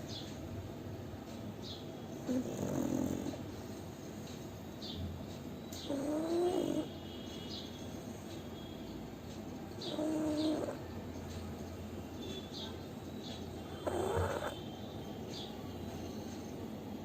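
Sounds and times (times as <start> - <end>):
dog snoring whiny: 2.2 - 3.9, 5.8 - 6.9, 9.8 - 11.0, 13.5 - 14.6.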